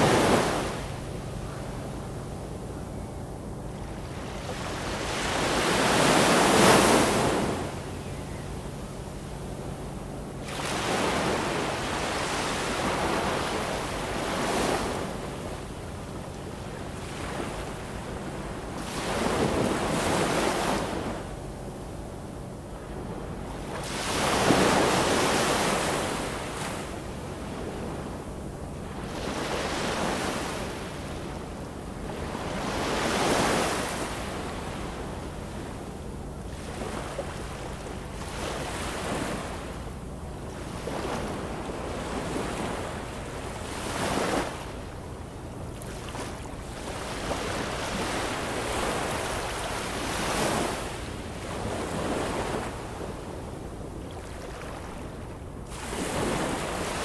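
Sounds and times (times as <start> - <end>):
waves breaking: 10.4 - 15.2, 23.6 - 28.0, 36.5 - 57.0.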